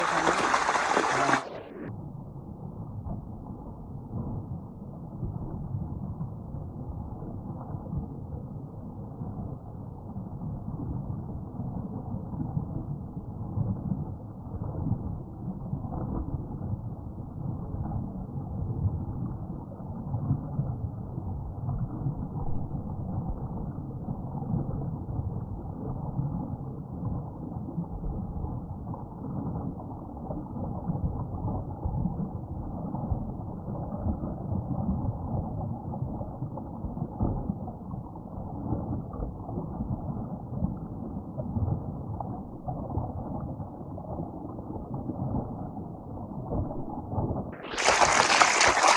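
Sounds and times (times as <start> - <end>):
waterfall roaring: 0.0 - 1.7, 47.8 - 48.9
bright rush of noise: 0.0 - 1.8, 47.6 - 48.9.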